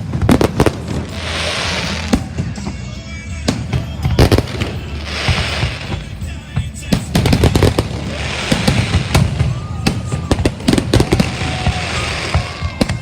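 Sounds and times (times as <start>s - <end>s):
fireworks bangs and crackling: 0.0s - 13.0s.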